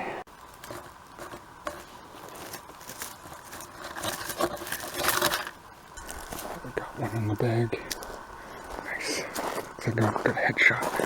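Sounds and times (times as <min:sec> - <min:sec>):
bag rustling and crinkling: 0:00.3 - 0:11.0
light clicks and scrapes: 0:00.4 - 0:11.0.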